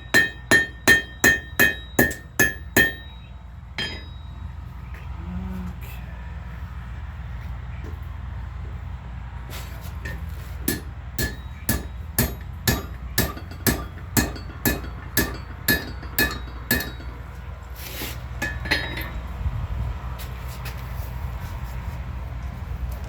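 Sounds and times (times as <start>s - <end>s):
hammer striking metal on anvil: 0.0s - 4.4s, 10.0s - 17.4s, 18.4s - 19.2s
steady low hum: 0.0s - 20.1s
scrape: 9.5s - 10.6s, 17.8s - 18.3s, 20.2s - 22.1s.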